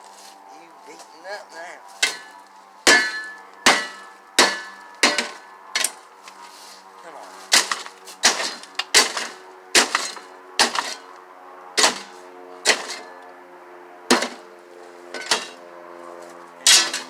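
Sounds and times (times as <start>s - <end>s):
metal being struck: 2.0s - 6.0s
ringing metal rattle: 2.0s - 6.0s, 7.5s - 11.1s, 11.8s - 13.2s, 15.1s - 15.6s, 16.6s - 17.0s.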